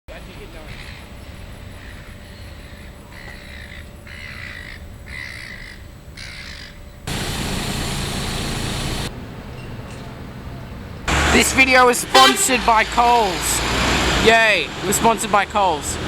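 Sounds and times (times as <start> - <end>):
crow cawing: 1.8 - 6.8
loud rushing noise: 7.1 - 9.1, 11.1 - 16.0.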